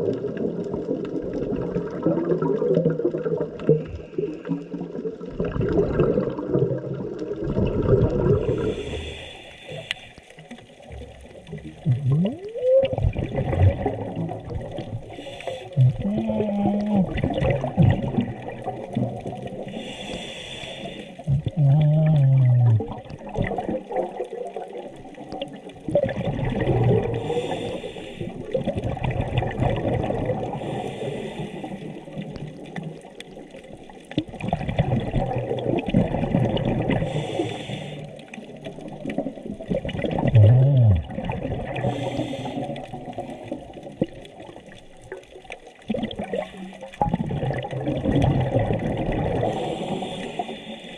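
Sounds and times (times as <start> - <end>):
exhaled air bubbling: 0.0 - 50.9
regulator inhalation hiss: 8.6 - 10.3, 15.1 - 15.8, 19.7 - 21.2, 27.2 - 28.3, 30.6 - 32.0, 37.1 - 38.1, 49.5 - 50.9.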